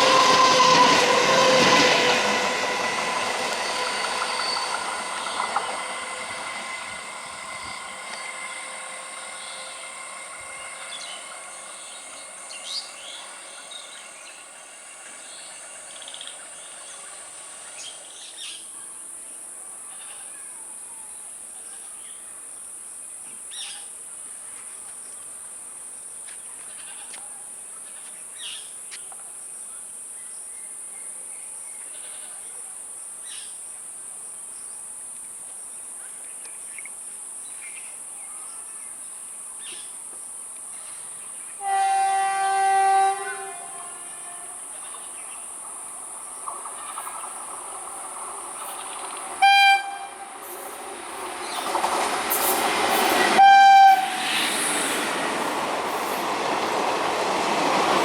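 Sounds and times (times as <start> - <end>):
train horn: 0.0 - 17.1, 41.6 - 45.5, 49.4 - 50.9, 52.3 - 54.9
train running noise: 0.0 - 20.0, 39.8 - 58.0
high insect drone with chirps: 0.5 - 53.4.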